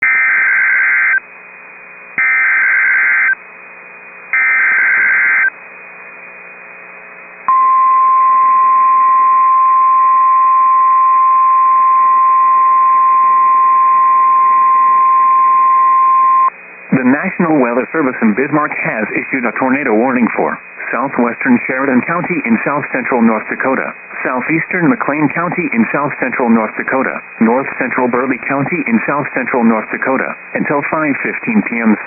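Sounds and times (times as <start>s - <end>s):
radio hiss: 16.5s - 32.0s.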